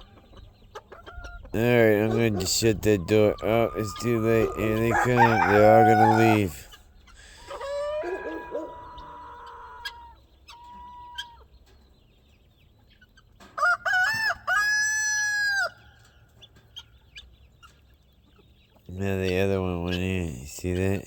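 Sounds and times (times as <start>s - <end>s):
roosters crowing: 1.1s - 11.5s, 13.4s - 16.2s.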